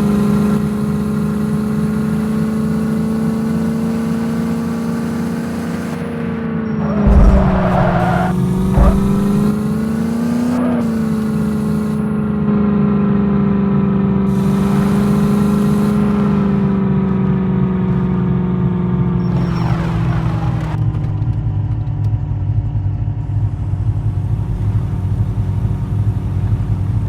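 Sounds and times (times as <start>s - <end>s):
jeep engine running: 0.0s - 27.0s
low thumps: 6.8s - 9.6s.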